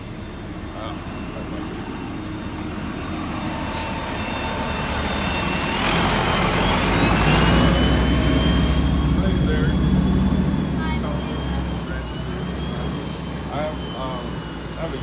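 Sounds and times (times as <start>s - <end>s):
heavy vehicle engine rumble: 0.0s - 15.0s.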